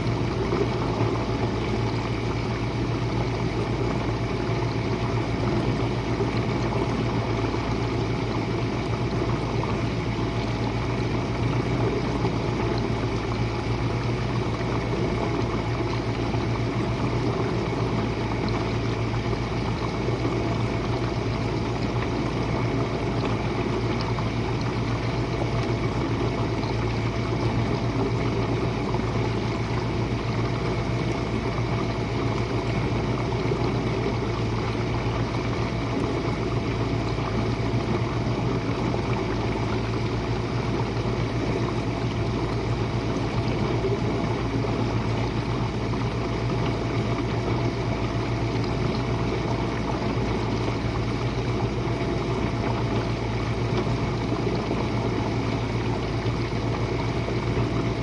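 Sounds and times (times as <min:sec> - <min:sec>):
dishwasher pump hum: 0:00.0 - 0:58.0.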